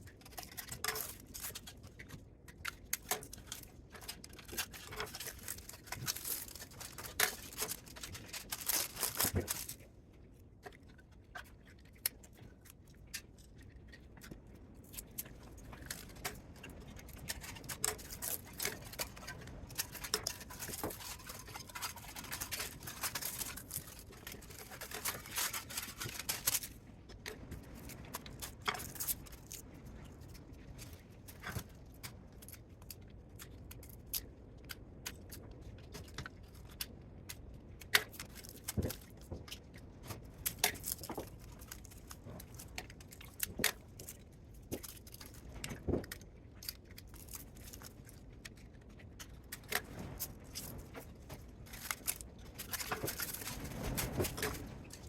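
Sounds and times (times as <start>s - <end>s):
light clicks and scrapes: 0.0s - 55.0s.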